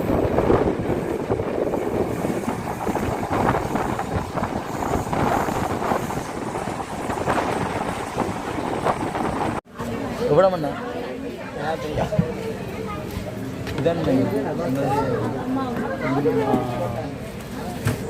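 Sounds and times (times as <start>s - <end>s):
wind buffeting microphone: 0.0s - 9.6s
passenger train rumbling: 0.0s - 18.0s.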